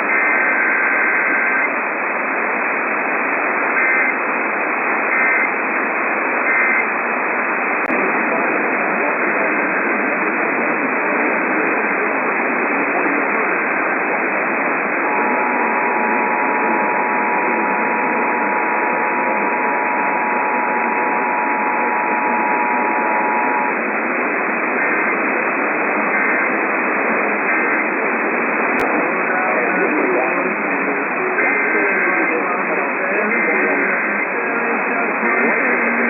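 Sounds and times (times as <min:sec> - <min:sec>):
radio static hiss: 0:00.0 - 0:36.0
two-tone attention signal: 0:06.4 - 0:06.9.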